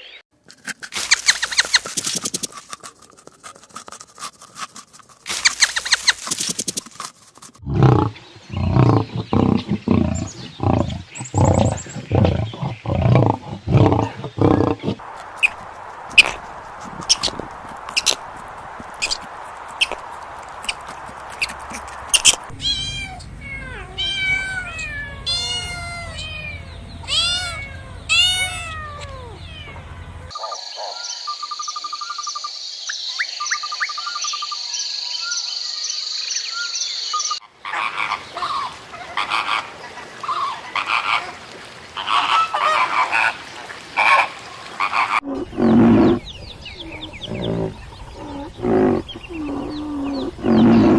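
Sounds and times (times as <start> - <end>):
animal clicking: 0.9 - 8.1, 13.1 - 22.5
short pulsed croaking calls: 8.1 - 29.8
arching chirps: 45.2 - 50.9.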